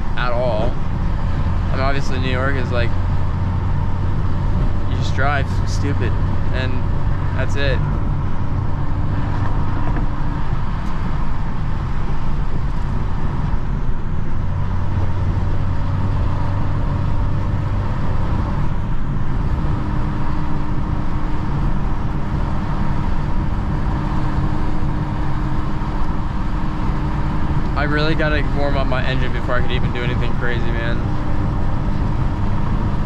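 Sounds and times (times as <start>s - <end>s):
car engine low drone: 0.0s - 33.0s
tyre and road noise: 0.0s - 33.0s.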